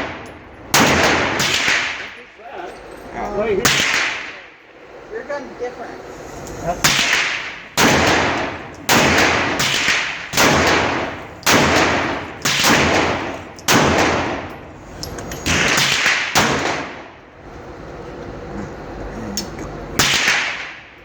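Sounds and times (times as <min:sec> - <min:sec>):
pistol shots echoing: 0:00.0 - 0:02.2, 0:03.6 - 0:04.5, 0:06.8 - 0:14.5, 0:15.4 - 0:17.1, 0:20.0 - 0:20.8.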